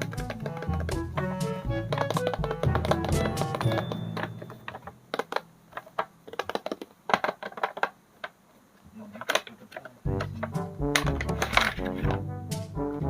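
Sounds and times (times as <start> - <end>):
music: 0.0 - 4.8, 10.0 - 13.0.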